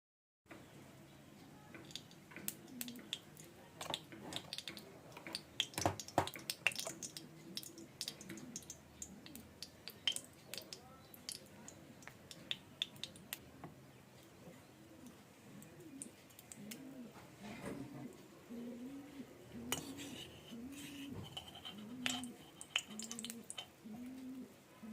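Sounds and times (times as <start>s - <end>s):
metal utensils clinking: 20.9s - 23.8s.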